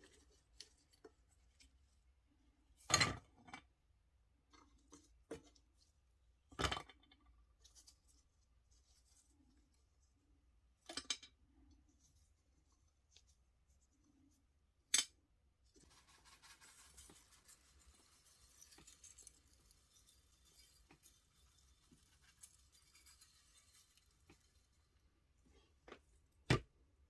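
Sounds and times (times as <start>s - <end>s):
light steady scratching: 15.7s - 26.2s.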